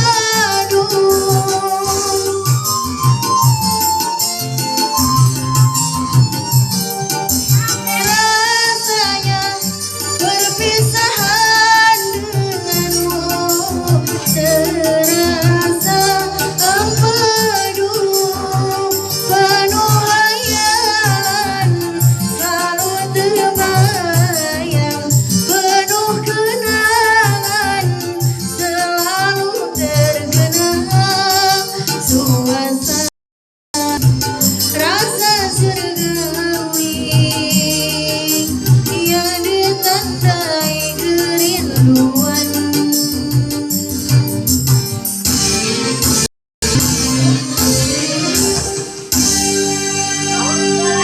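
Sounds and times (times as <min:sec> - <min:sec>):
backing track with steady beat: 0:00.0 - 0:33.1, 0:33.7 - 0:51.0
person singing: 0:07.5 - 0:33.1.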